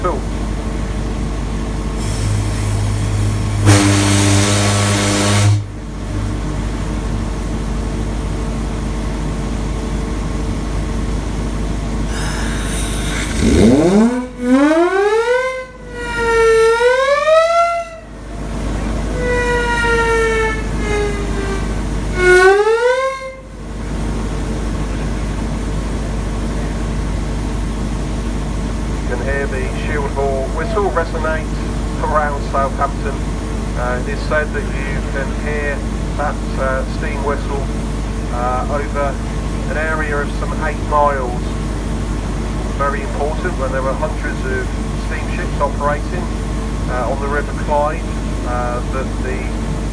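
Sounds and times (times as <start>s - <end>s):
constant low rumble: 0.0s - 49.9s
low horn blast: 1.7s - 8.9s, 11.8s - 49.9s
hiss of steam: 2.0s - 5.6s, 12.1s - 13.4s
steam whistle blowing: 2.0s - 6.3s, 12.1s - 23.6s.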